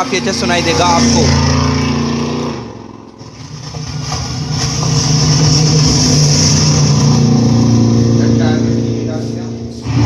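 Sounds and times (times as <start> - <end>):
motor humming: 3.0 - 10.0.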